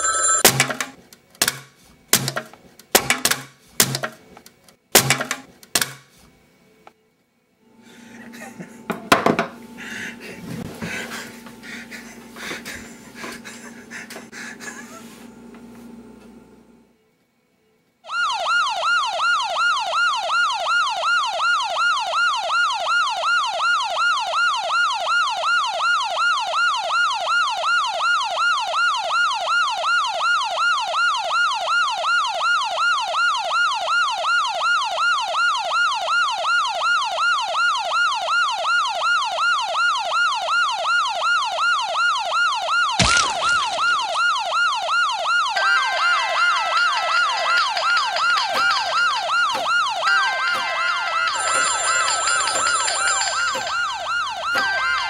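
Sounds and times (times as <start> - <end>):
siren whooping: 18.0 - 55.0.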